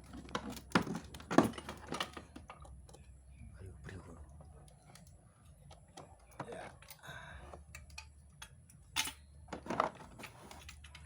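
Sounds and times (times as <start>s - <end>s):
car jack parts clattering: 0.0s - 2.8s, 8.9s - 11.0s.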